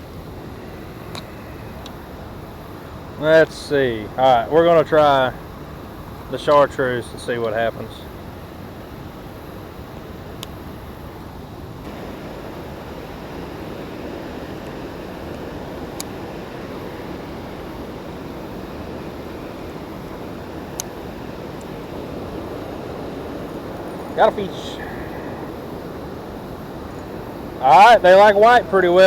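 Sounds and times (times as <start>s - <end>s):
faint sharp ticks: 10.4s - 10.6s, 20.7s - 21.0s
stream water rushing: 11.8s - 29.0s.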